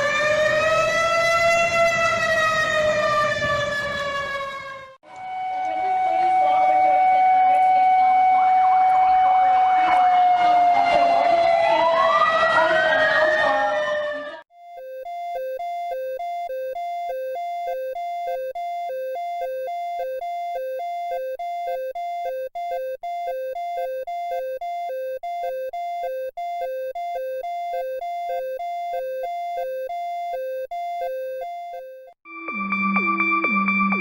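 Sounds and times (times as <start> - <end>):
two-tone electronic alert tone: 14.5 - 33.2.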